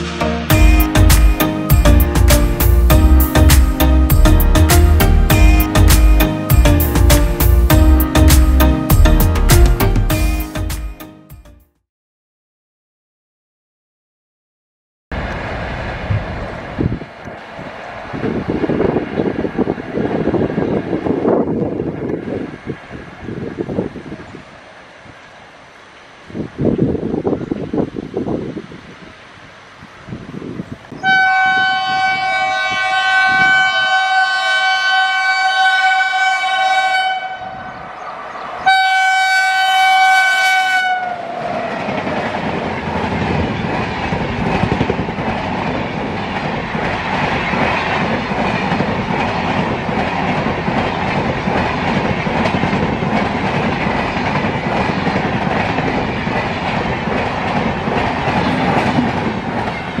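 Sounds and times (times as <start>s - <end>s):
train running on rails: 0.0s - 11.6s, 15.1s - 60.0s
train horn blasts: 30.9s - 37.8s, 38.6s - 41.4s.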